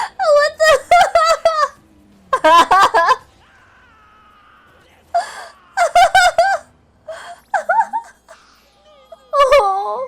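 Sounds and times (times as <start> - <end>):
person exclaiming: 3.0 - 6.6
person gasping: 5.2 - 5.6.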